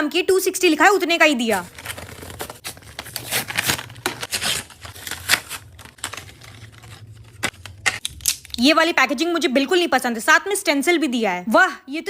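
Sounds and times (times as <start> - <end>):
packaging crinkling and rustling: 1.5 - 8.6.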